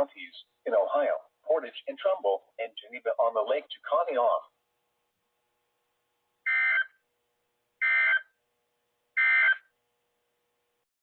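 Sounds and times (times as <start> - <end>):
digital data tone bursts: 7.8 - 8.3.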